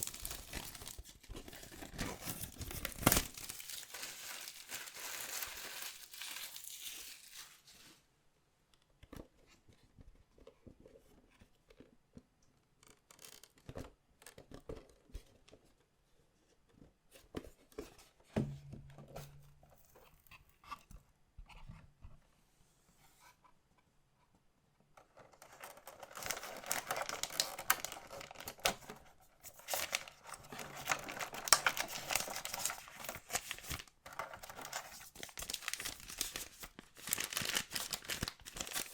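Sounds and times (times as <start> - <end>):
plastic wrappers crinkling and tearing: 0.0 - 7.8, 25.4 - 38.9.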